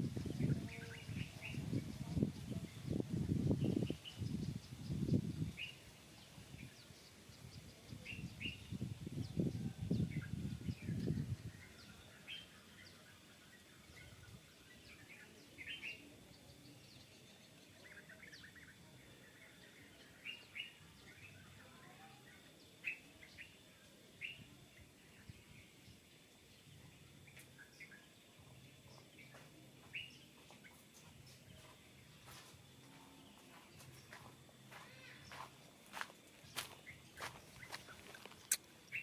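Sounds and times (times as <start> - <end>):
low background hiss: 0.0 - 39.0
bird chirps: 27.2 - 39.0.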